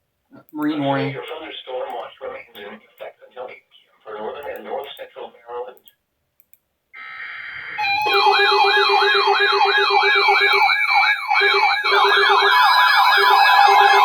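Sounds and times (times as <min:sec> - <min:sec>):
warbling siren: 0:07.0 - 0:14.0
rapid low beeping: 0:07.8 - 0:14.0.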